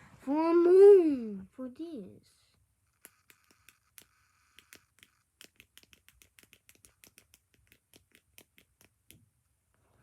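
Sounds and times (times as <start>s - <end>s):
plastic fidget toy clicking: 2.9s - 9.2s.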